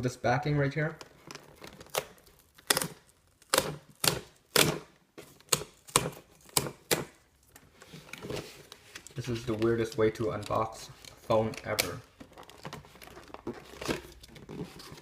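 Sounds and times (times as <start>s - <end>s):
plastic packaging crackling: 1.0s - 4.5s.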